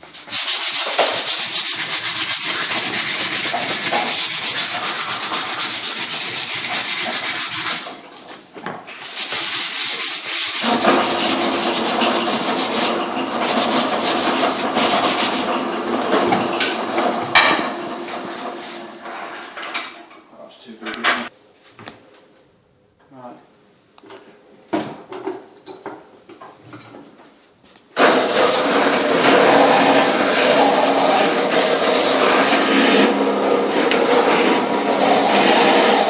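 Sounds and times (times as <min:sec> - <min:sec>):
wood sanding rasp: 0:00.2 - 0:07.9, 0:09.0 - 0:15.7, 0:28.1 - 0:36.0.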